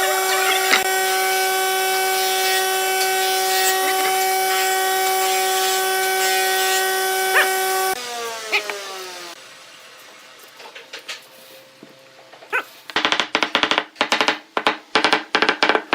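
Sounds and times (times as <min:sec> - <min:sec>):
lathe motor whining: 0:00.0 - 0:09.4.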